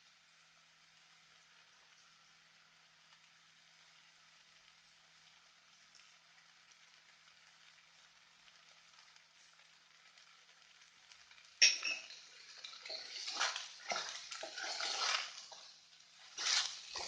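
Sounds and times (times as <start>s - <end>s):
faint hiss from pot: 0.0s - 17.0s
spoon clanking against pot: 11.6s - 15.2s
scraping and clinking of stirring: 11.6s - 17.0s.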